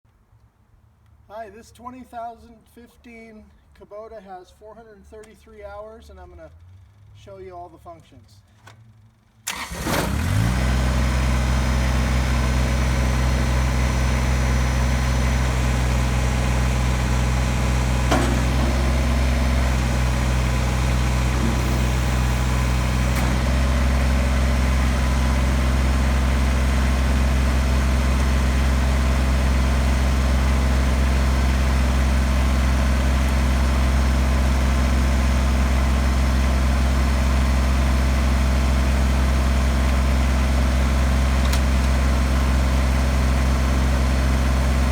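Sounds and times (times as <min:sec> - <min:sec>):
diesel tractor engine idling: 0:09.4 - 0:44.9.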